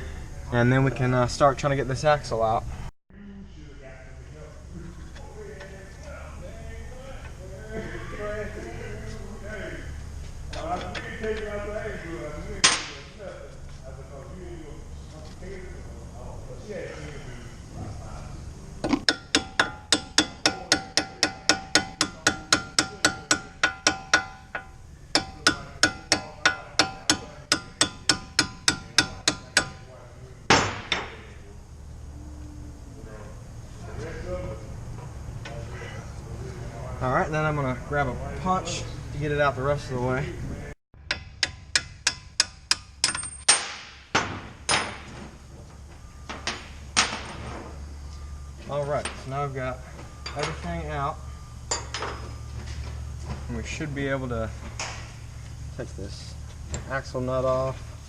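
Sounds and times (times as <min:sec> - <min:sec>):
hammer striking steel: 0:19.0 - 0:29.9, 0:30.5 - 0:31.2, 0:41.0 - 0:45.0.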